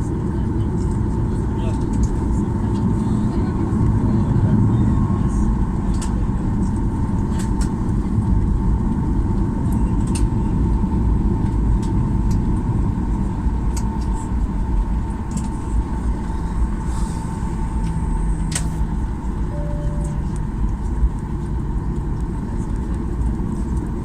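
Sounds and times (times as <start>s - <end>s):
aircraft cabin engine rumble: 0.0s - 24.0s
thin steady whine: 13.4s - 24.0s.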